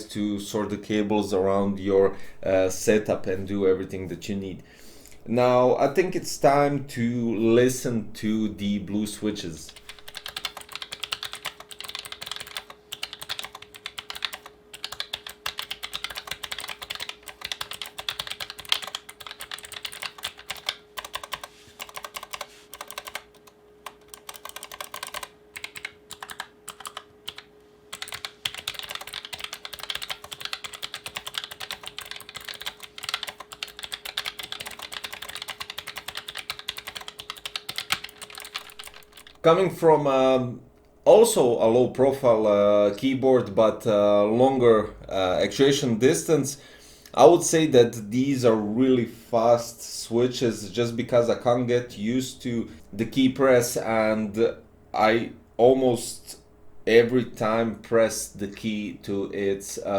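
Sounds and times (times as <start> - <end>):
mechanical keyboard typing: 9.7 - 39.4.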